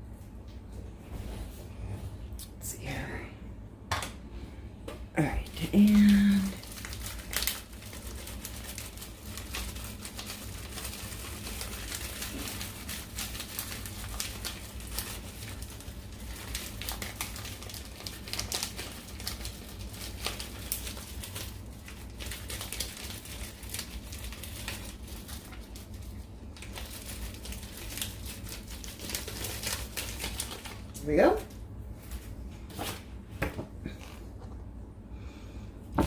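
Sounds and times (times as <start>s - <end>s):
plastic packaging crinkling: 5.2s - 33.1s.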